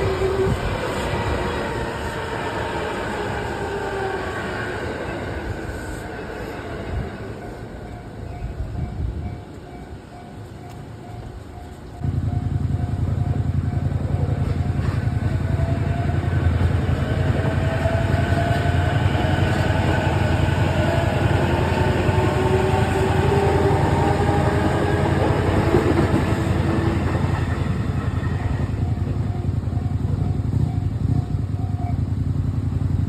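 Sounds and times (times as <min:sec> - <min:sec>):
train motor whine: 0:00.0 - 0:08.0, 0:10.6 - 0:32.0
electric train rumbling past: 0:00.0 - 0:33.0
crossing bell ringing: 0:04.2 - 0:32.8.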